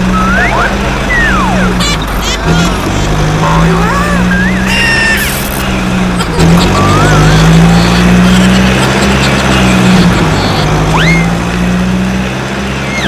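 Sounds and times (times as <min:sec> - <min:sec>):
whistle-like tones: 0:00.0 - 0:01.7, 0:04.2 - 0:05.4, 0:10.4 - 0:11.3
vehicle engine drone: 0:00.0 - 0:13.0.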